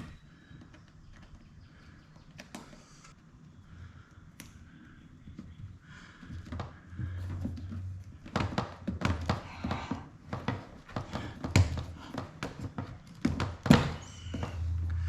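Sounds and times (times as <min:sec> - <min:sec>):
low hum: 0:14.0 - 0:15.0.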